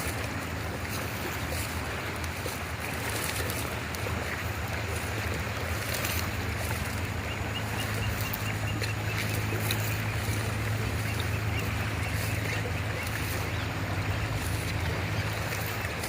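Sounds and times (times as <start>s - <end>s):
river water rushing: 0.0s - 16.0s
low hum: 3.6s - 16.0s.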